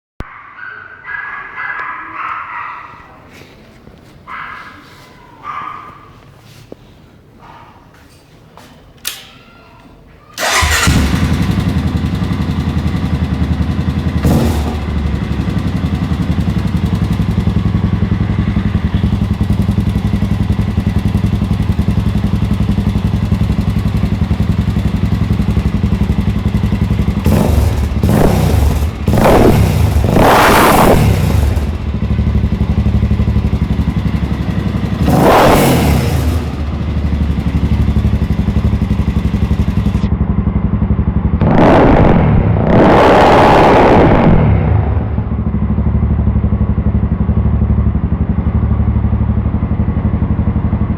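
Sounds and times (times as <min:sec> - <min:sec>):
motorcycle engine idling: 0:10.4 - 0:41.4, 0:45.1 - 0:50.9
motorcycle engine revving: 0:10.4 - 0:50.9.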